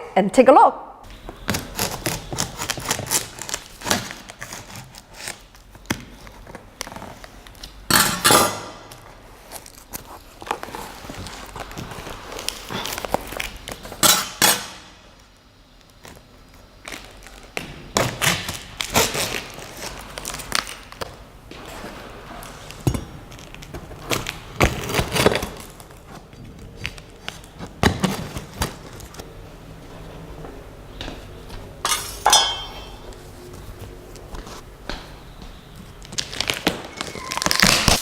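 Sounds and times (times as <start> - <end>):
box and packing being handled: 1.1 - 7.6, 8.9 - 14.0
knocks and clinks: 31.8 - 33.0.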